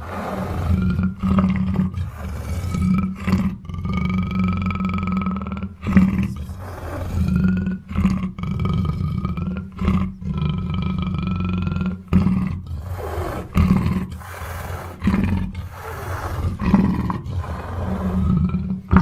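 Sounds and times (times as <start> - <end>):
panther roaring and growling: 0.0 - 19.0.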